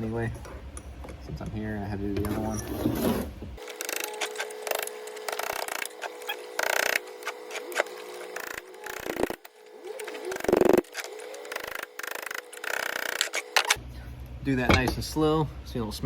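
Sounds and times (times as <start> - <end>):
steady hum: 3.2 - 16.0.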